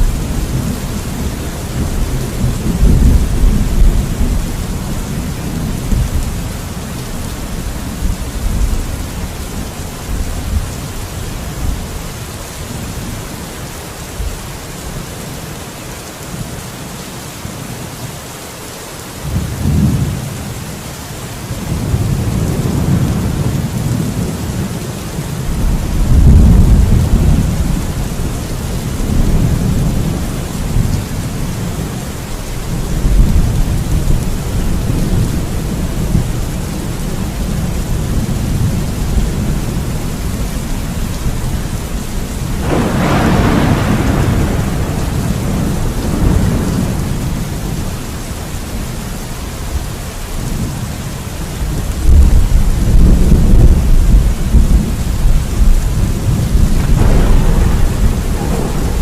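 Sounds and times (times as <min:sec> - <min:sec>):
rolling thunder rumbling: 0:00.0 - 0:12.0, 0:21.6 - 0:49.0, 0:51.6 - 0:59.0
steady rain falling: 0:00.0 - 0:59.0.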